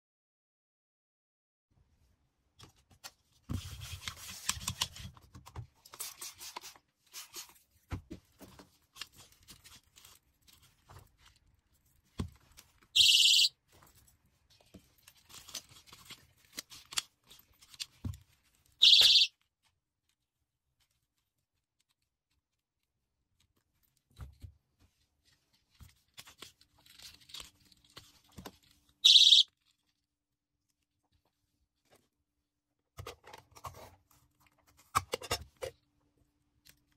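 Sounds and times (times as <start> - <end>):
personal alarm shrieking: 13.0 - 13.5, 18.8 - 19.3, 29.0 - 29.4.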